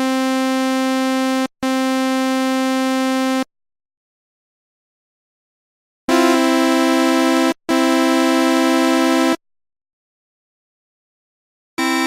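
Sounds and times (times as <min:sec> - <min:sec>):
synthesizer buzzy note: 0:06.1 - 0:09.4, 0:11.8 - 0:12.0.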